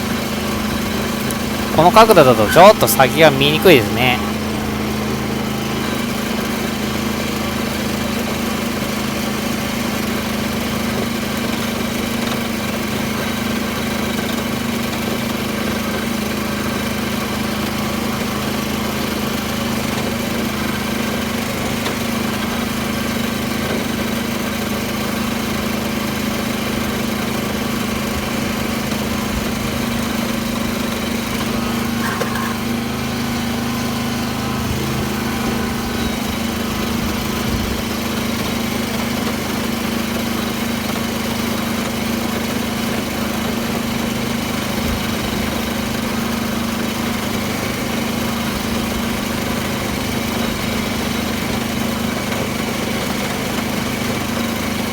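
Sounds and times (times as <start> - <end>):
tractor engine running steadily: 0.0 - 54.9.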